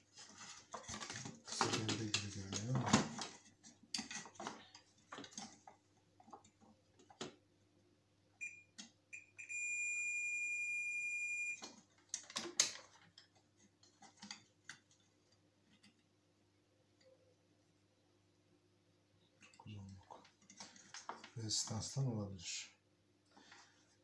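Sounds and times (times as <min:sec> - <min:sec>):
multimeter continuity beeps: 0:08.4 - 0:11.6.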